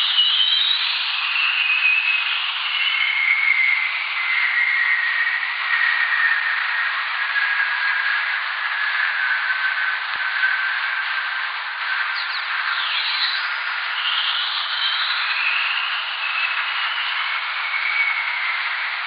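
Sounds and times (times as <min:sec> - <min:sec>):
steady radio hiss: 0:03.8 - 0:19.0
long falling radio whistle: 0:11.9 - 0:19.0.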